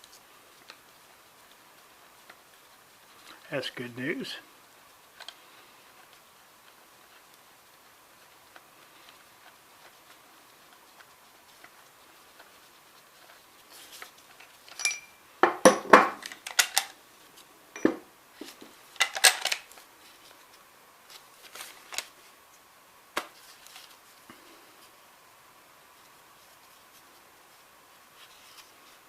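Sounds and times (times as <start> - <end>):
metal parts clinking and clattering: 16.2 - 16.9, 19.0 - 19.6.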